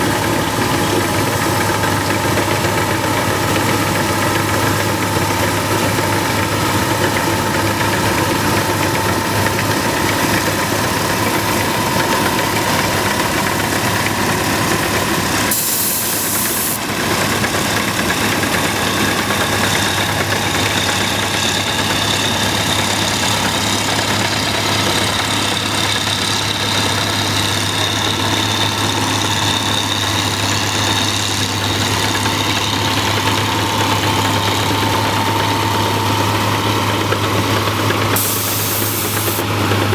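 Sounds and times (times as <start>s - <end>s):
combine harvester engine running: 0.0s - 39.9s
high hiss: 15.5s - 16.8s, 38.2s - 39.5s.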